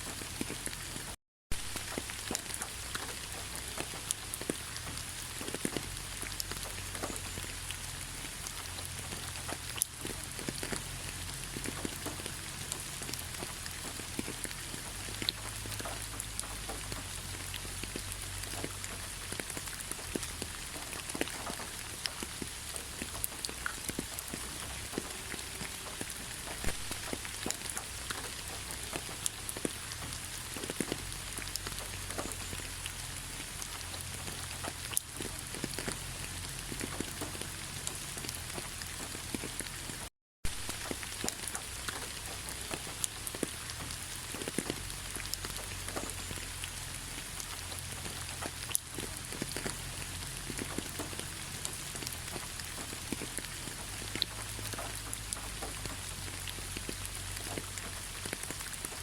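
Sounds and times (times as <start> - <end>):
raindrop hits: 0.0 - 59.0
steady rain falling: 0.0 - 59.0.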